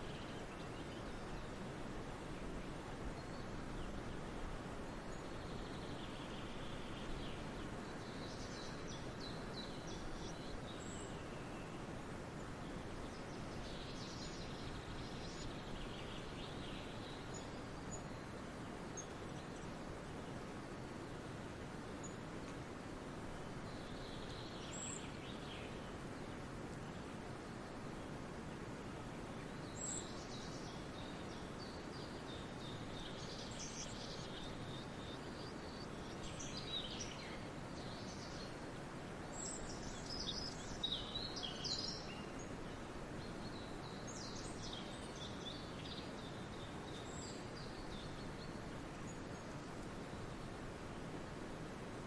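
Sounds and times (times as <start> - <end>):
steady low background noise: 0.0 - 52.0.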